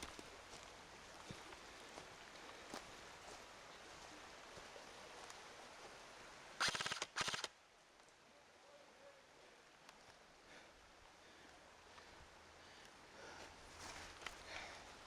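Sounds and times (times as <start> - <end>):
airsoft rifle rapid fire: 6.6 - 7.5.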